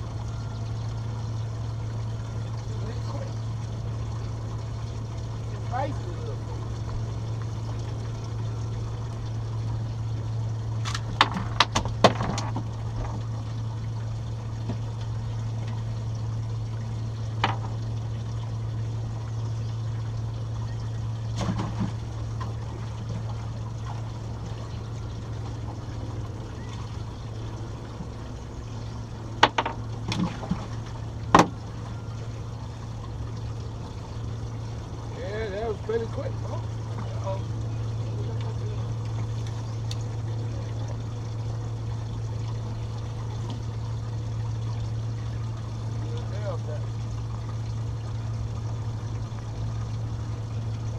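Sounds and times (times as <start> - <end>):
steady low hum: 0.0 - 50.9
water splashing and trickling: 0.0 - 50.9
sharp clicks and knocks: 29.4 - 30.3.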